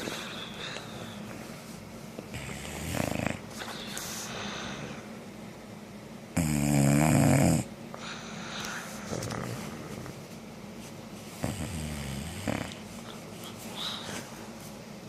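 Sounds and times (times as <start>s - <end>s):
dog snoring: 2.3s - 4.1s, 6.3s - 8.1s, 9.0s - 10.1s, 11.4s - 13.1s.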